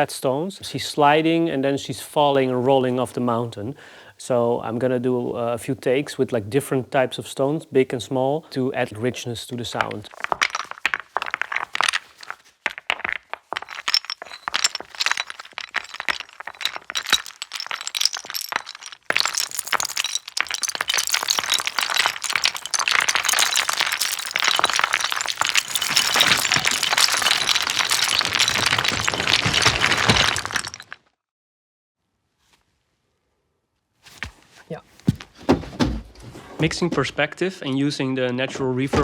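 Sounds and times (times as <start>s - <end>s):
stones clattering and grinding: 9.6s - 31.0s.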